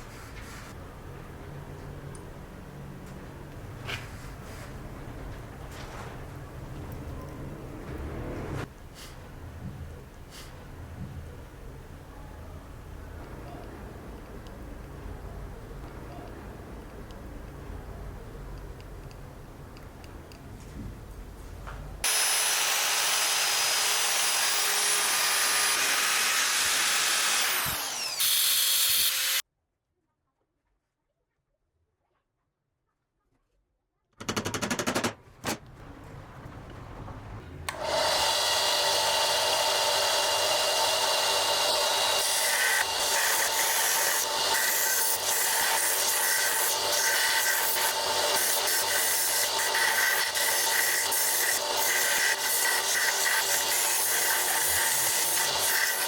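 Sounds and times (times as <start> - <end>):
power tool running: 22.0 - 29.4, 37.7 - 56.0.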